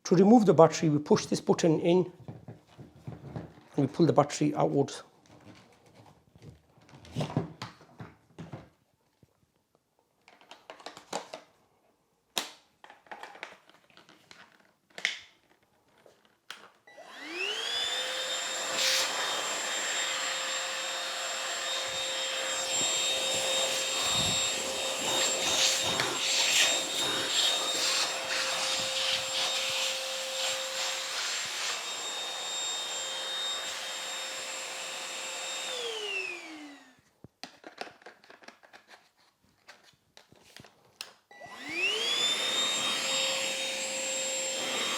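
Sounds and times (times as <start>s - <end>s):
handheld vacuum cleaner whining: 16.8s - 37.1s, 41.3s - 44.9s.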